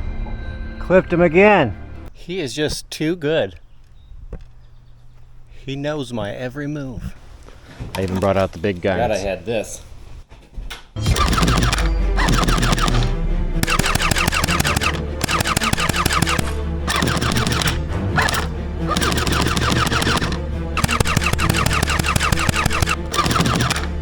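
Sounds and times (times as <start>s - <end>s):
automatic gunfire bursts: 11.1s - 24.0s.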